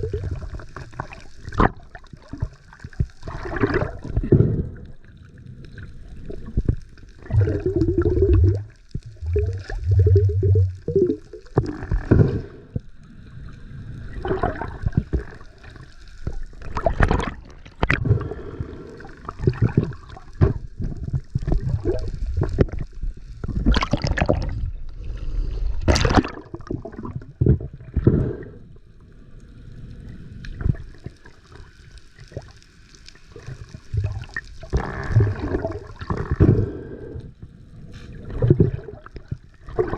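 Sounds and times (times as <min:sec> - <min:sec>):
water splashes: 0:00.0 - 0:12.8, 0:13.4 - 0:28.2, 0:38.0 - 0:39.9
water sloshing and gurgling: 0:00.0 - 0:39.9.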